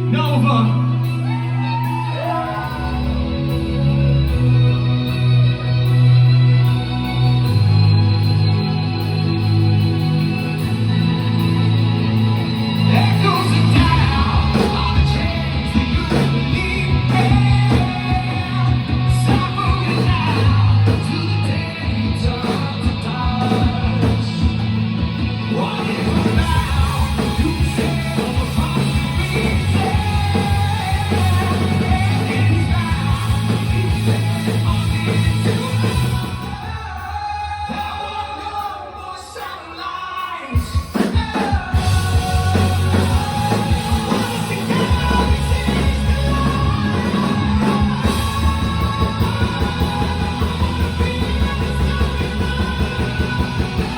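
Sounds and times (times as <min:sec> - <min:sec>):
person singing: 0:00.0 - 0:24.8, 0:25.4 - 0:53.9
live rock band playing: 0:00.0 - 0:53.9.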